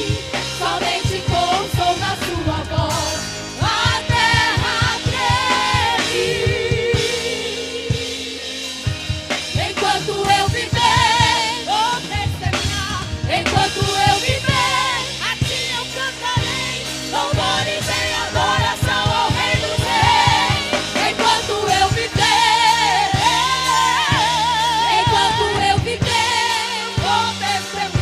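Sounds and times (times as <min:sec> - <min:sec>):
band with drum kit: 0:00.0 - 0:28.0
vocal group singing with vibrato: 0:00.0 - 0:28.0.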